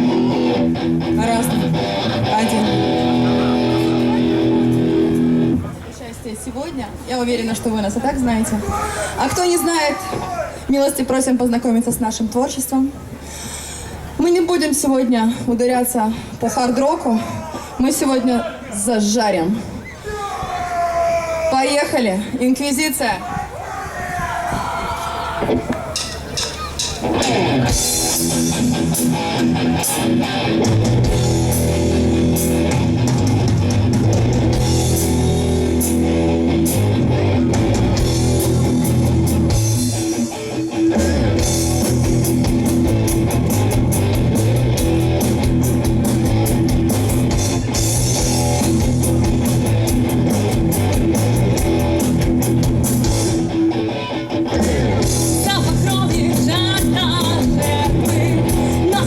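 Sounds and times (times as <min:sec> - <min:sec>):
rock band playing: 0:00.0 - 0:05.6, 0:25.4 - 0:59.0.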